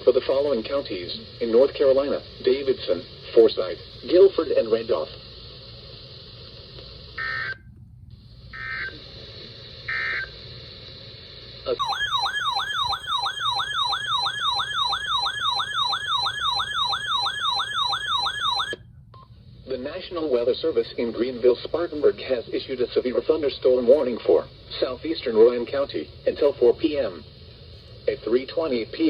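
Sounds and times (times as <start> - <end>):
warbling electronic alert tone: 11.8 - 18.8.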